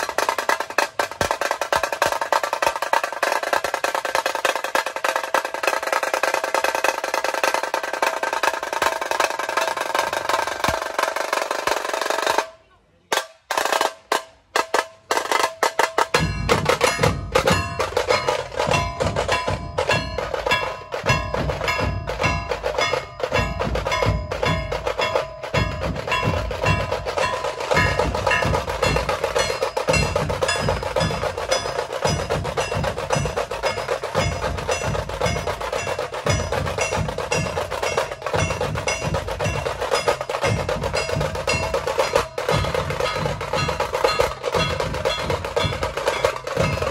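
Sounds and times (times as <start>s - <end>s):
deep dhol drum beats: 0.0s - 12.5s, 13.1s - 46.9s
tasha drum strikes: 0.0s - 12.6s, 13.2s - 46.9s
fast tasha drum roll: 0.0s - 46.9s.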